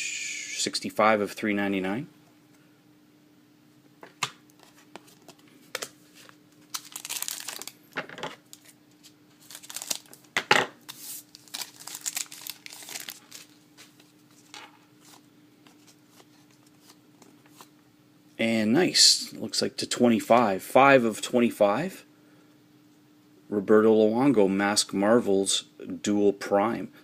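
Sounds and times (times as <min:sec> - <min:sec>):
faint steady hum: 0:00.0 - 0:27.0
card wrapping crinkling and tearing: 0:04.6 - 0:07.8, 0:08.4 - 0:10.3, 0:10.9 - 0:15.2.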